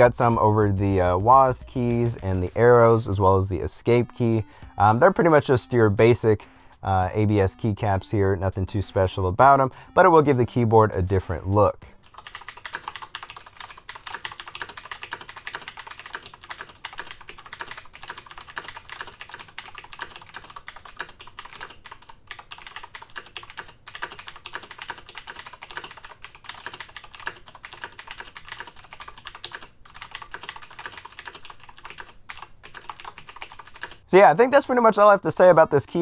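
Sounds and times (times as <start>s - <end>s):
fast mechanical keyboard typing: 0.0s - 3.1s, 12.0s - 34.0s.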